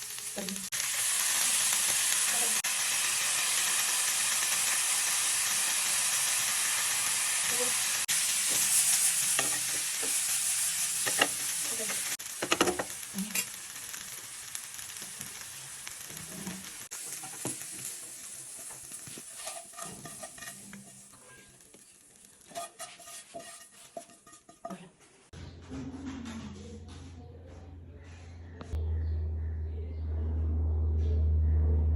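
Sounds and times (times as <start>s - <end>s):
food sizzling in a hot pan: 0.0s - 24.5s
utensil scraping and knocking pan: 18.5s - 21.8s, 22.4s - 25.0s.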